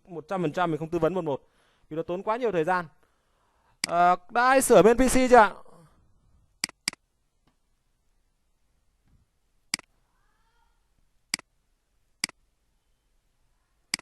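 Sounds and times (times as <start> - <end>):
sharp short clicks: 6.6 - 7.0.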